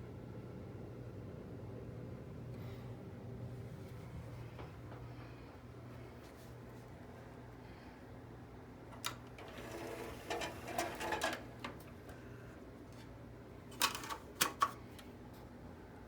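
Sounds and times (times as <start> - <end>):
cd changer mechanism whirring: 8.7 - 15.2.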